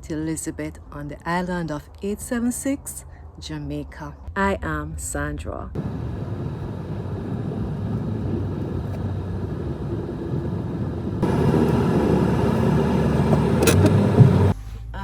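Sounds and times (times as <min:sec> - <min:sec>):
road noise: 0:05.8 - 0:14.6
vehicle engine rumble: 0:05.8 - 0:14.6.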